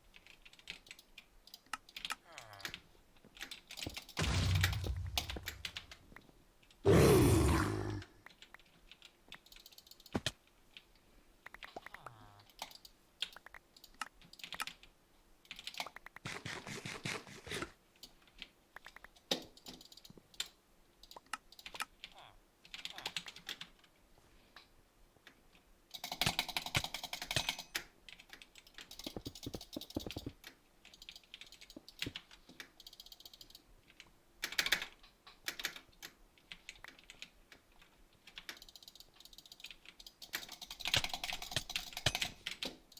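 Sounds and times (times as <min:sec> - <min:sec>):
quick clicks in bursts: 0:38.3 - 0:42.9.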